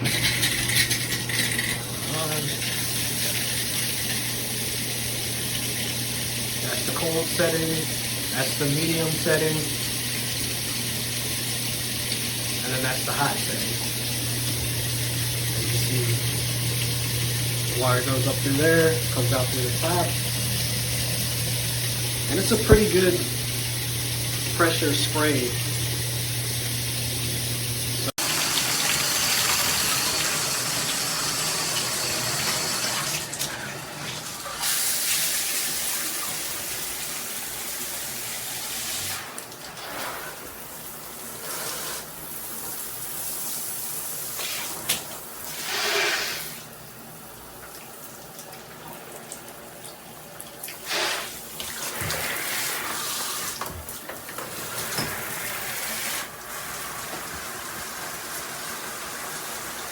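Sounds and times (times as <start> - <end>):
shower head spraying water: 1.6 - 33.2.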